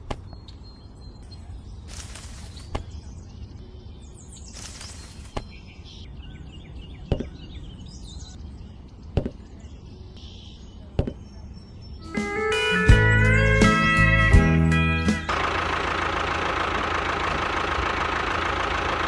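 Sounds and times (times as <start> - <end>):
birds chirping: 0.0 - 14.3
music: 12.0 - 15.3.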